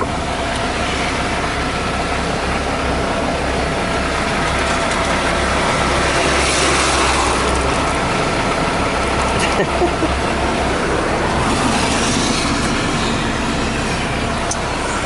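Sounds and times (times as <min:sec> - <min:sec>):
truck engine hum: 0:00.0 - 0:15.0.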